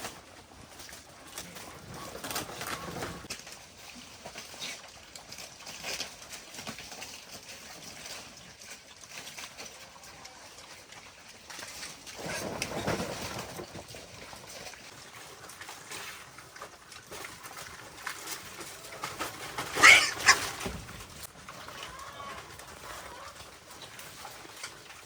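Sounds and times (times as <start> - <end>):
rustling: 0.0 - 25.0
wild boar noises: 0.0 - 25.0.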